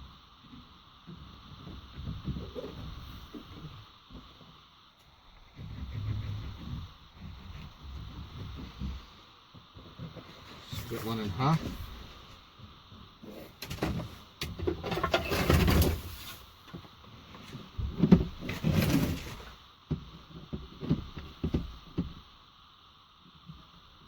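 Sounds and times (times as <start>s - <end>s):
scraping rustling of sheet: 10.2s - 12.3s, 14.9s - 16.6s, 18.4s - 19.6s.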